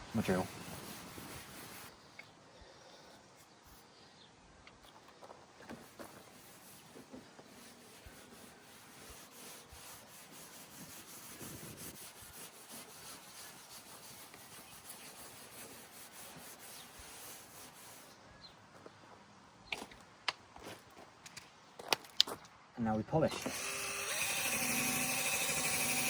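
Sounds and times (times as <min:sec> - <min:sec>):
cloth scrubbing paste on plastic: 0:00.1 - 0:01.9, 0:05.6 - 0:18.1.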